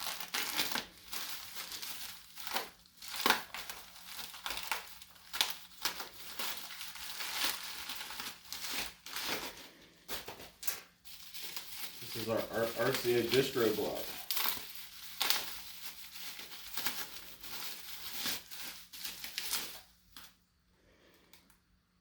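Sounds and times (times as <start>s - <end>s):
packaging rustling and crinkling: 0.0s - 20.4s
packaging tearing: 0.0s - 20.4s.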